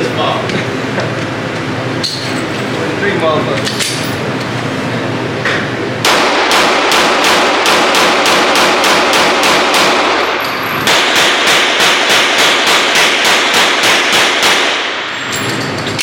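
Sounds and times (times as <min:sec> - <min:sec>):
rapid gunfire: 0:06.0 - 0:15.0.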